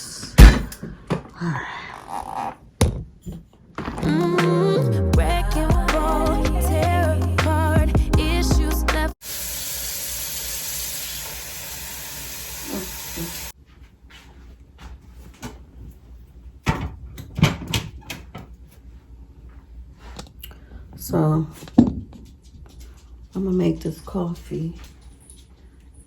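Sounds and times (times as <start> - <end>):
steady hiss: 9.2 - 13.6.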